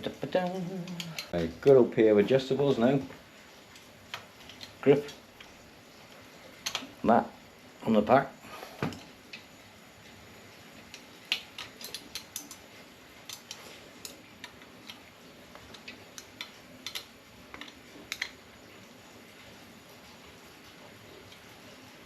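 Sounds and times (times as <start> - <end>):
spanner metallic clicks: 10.9 - 12.6, 15.7 - 18.4.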